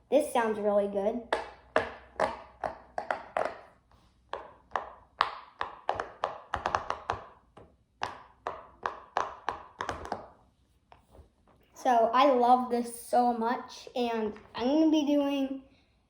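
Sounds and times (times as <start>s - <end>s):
fidget toy popping: 1.3s - 10.4s.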